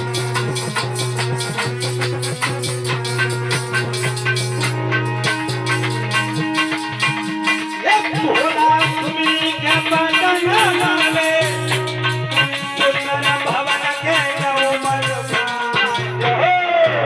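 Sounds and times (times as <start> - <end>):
fast rattling percussion: 0.0 - 16.4
ornamented folk melody: 0.0 - 16.8.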